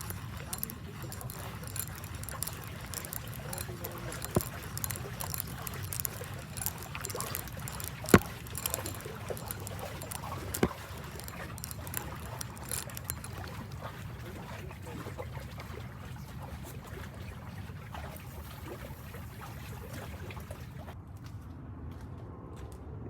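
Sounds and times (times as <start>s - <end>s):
light clicks and ticks: 0.0s - 15.0s.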